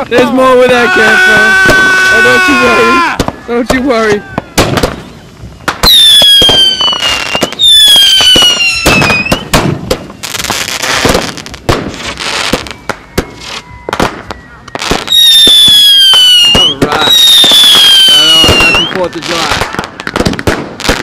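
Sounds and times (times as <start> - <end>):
firework bangs and crackling: 0.0 - 21.0
firework whistles: 4.2 - 21.0.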